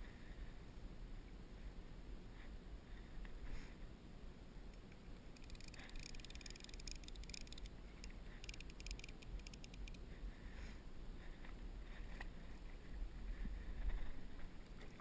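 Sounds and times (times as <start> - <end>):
low steady rumble: 0.0 - 15.0
rapid high clicking: 4.8 - 10.0.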